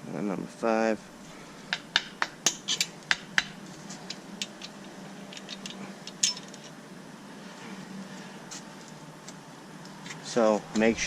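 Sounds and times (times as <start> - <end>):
metal clinks and taps: 1.7 - 6.7.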